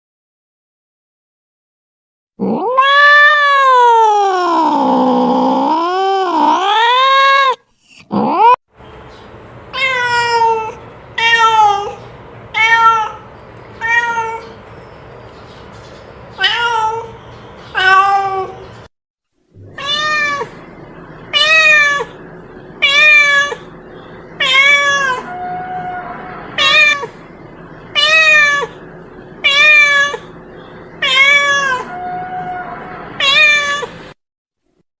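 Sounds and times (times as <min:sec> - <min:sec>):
cat meowing loudly: 0:02.4 - 0:07.6, 0:19.6 - 0:20.6, 0:21.3 - 0:22.2, 0:22.8 - 0:23.7, 0:24.4 - 0:27.2, 0:28.0 - 0:28.8, 0:29.4 - 0:30.3, 0:31.0 - 0:34.0.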